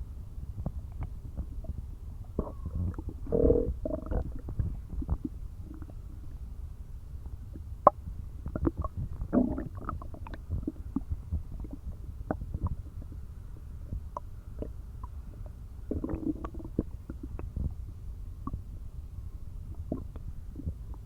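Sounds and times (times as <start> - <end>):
stomach low rumble: 0.0 - 21.0
stomach gurgling pops: 0.6 - 6.0, 7.5 - 13.2, 13.8 - 17.8, 18.4 - 18.7, 19.7 - 21.0
stomach growling: 0.6 - 6.1, 7.5 - 17.8, 19.7 - 21.0.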